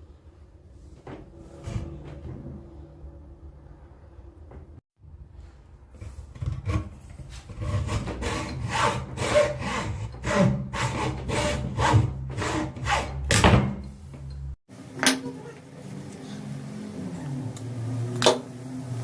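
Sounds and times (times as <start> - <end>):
hand saw cutting wood: 6.0 - 13.4.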